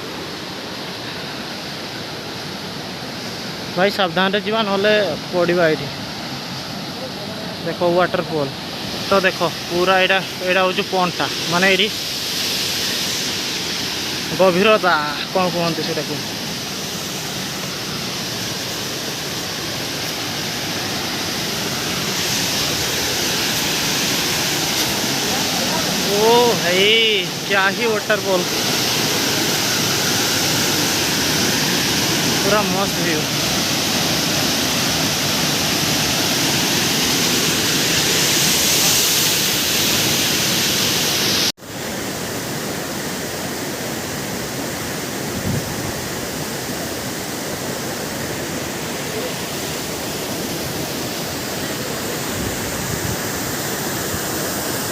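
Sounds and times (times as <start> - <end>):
waterfall rushing: 0.0 - 54.9
waterfall pouring into pool: 19.5 - 41.3.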